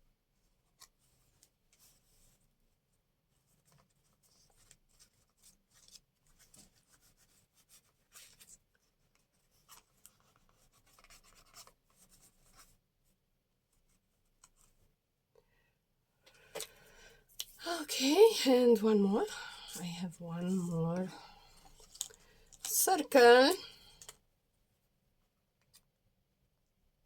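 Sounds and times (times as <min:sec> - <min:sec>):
paper rustling: 0:21.1 - 0:23.8.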